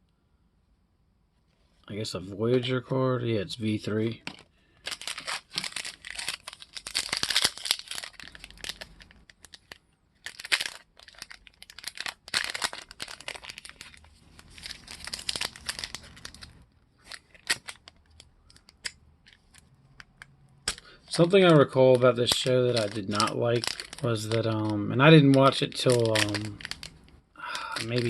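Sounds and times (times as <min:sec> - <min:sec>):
trading cards rustling: 0:04.0 - 0:28.0.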